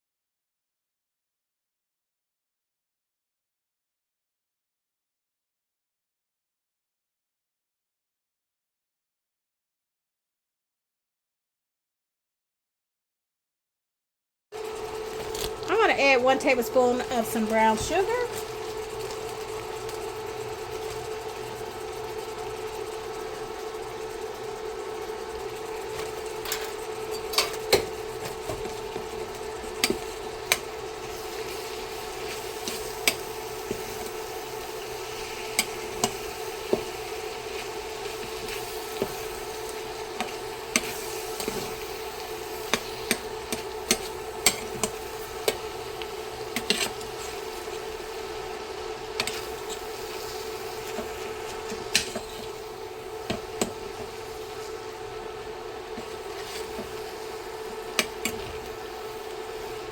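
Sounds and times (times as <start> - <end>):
steady hum: 14.6 - 59.9
spoon stirring sauce in a pan: 27.2 - 55.0, 55.7 - 59.8.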